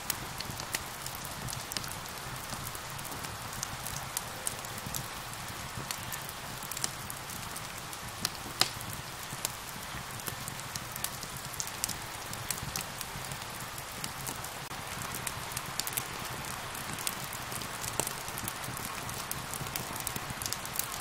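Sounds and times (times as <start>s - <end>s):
rain hissing: 0.0s - 21.0s
wood fire crackling and popping: 0.0s - 21.0s.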